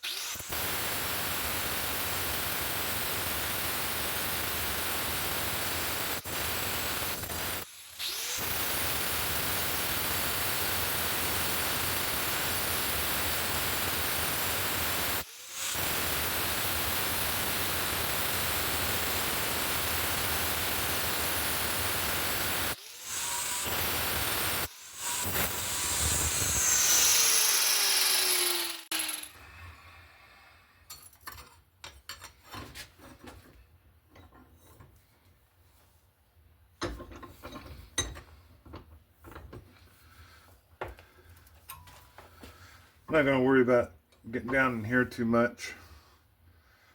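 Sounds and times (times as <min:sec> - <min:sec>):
angle grinder cutting steel: 0:00.0 - 0:29.4
grinder wheel spinning down: 0:00.0 - 0:29.4.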